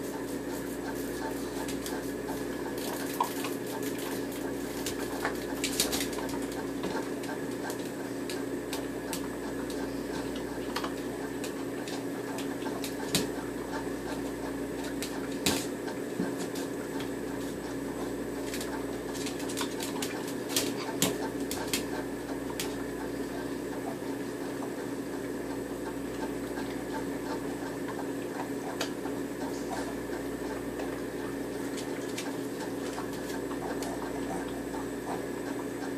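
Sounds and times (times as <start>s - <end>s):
mechanical hum: 0.0s - 35.9s.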